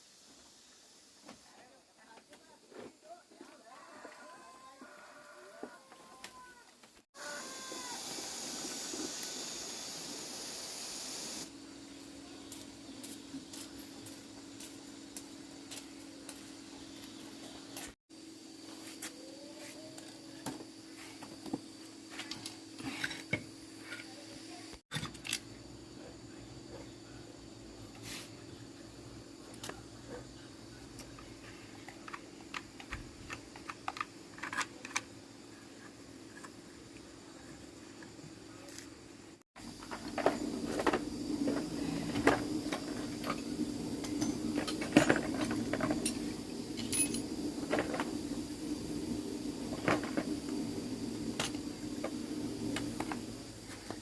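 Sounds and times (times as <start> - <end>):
steady low hum: 35.3 - 54.0
metal tools clinking: 44.0 - 47.3.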